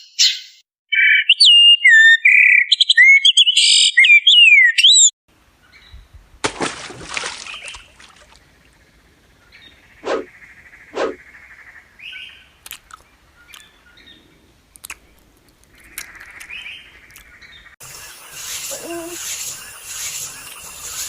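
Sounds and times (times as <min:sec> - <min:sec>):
songbird whistling: 0:00.2 - 0:05.1
faint chirps: 0:15.9 - 0:21.0.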